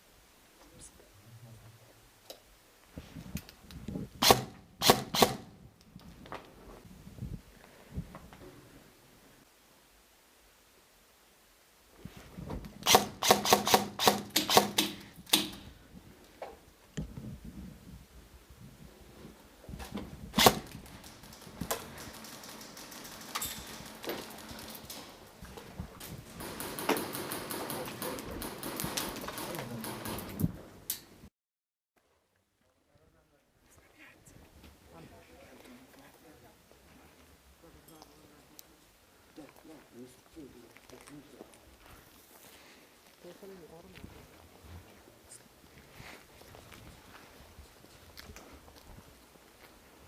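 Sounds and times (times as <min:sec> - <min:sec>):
shuffling and rustling: 0:02.8 - 0:04.1, 0:11.9 - 0:12.8, 0:15.0 - 0:26.4, 0:39.2 - 0:50.0
loud sharp cracks: 0:04.2 - 0:05.6, 0:12.8 - 0:15.7, 0:20.3 - 0:25.0, 0:26.4 - 0:31.1
sharp knocks and clicks: 0:12.8 - 0:15.7, 0:26.4 - 0:31.0.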